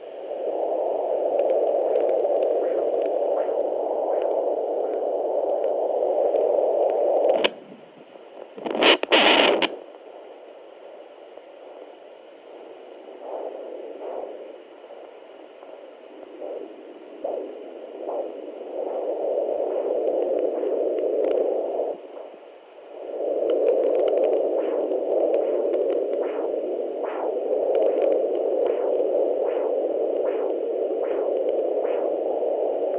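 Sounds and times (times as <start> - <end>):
whooshing static noise: 0.0 - 32.9
regular swishing heartbeat: 1.4 - 5.6, 13.1 - 22.3, 23.0 - 32.9.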